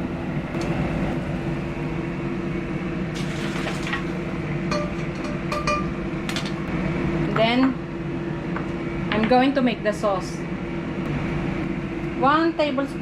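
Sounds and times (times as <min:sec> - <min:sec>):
steady mechanical hum: 0:00.0 - 0:13.0
cookware clinking and clattering: 0:03.2 - 0:04.1, 0:04.7 - 0:06.6.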